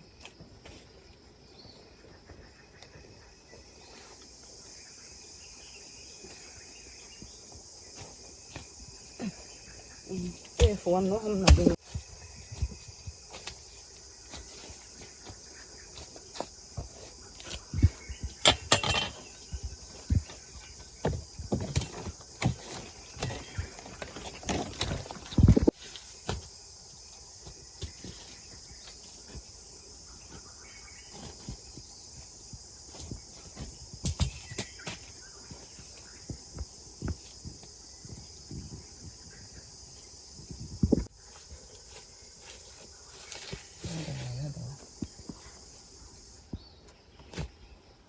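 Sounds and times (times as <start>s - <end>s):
insects chirring: 0.0s - 48.0s
knocks and thuds: 10.6s - 12.8s.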